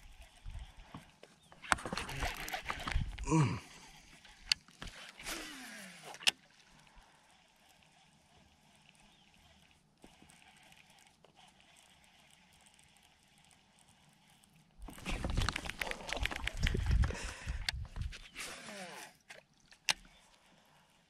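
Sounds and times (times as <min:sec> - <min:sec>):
fishing reel whirring: 0:00.0 - 0:21.0
reel click: 0:01.6 - 0:03.2, 0:18.9 - 0:20.4.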